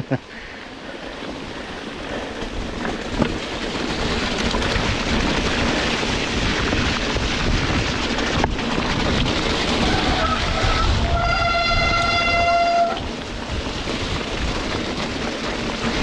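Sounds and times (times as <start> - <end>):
heavy rain: 0.1 - 16.0
wind buffeting microphone: 2.0 - 16.0
train horn held note: 10.1 - 13.0.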